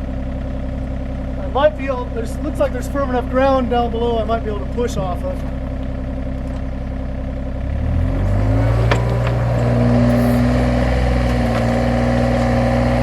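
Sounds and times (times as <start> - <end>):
diesel engine revving up: 7.1 - 13.0.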